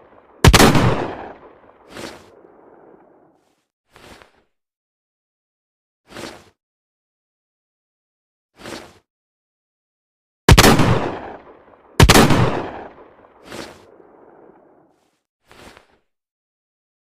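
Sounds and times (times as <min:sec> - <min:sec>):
shotgun shots with echo: 0:00.4 - 0:01.8, 0:10.5 - 0:13.1.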